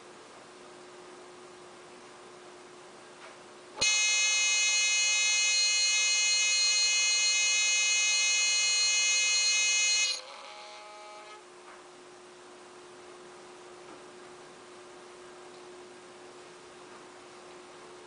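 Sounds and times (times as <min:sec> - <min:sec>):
steady electronic buzz: 0:03.8 - 0:11.4.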